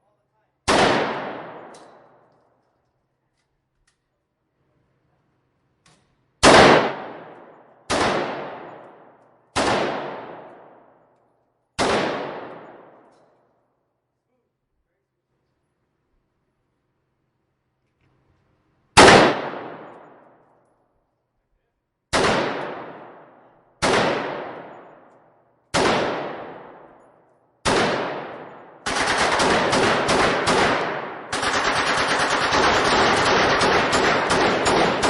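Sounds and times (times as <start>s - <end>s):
single gunshots echoing: 0.7s - 2.2s, 6.4s - 10.9s, 11.8s - 13.1s, 19.0s - 20.3s, 22.1s - 25.1s
automatic gunfire bursts: 27.6s - 35.0s.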